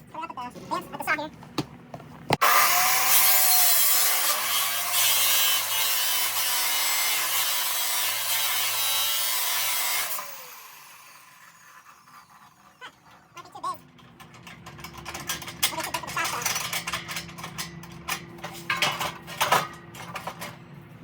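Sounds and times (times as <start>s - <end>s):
metal-cutting saw cutting steel: 2.4s - 13.3s
saw blade winding down: 2.4s - 13.4s.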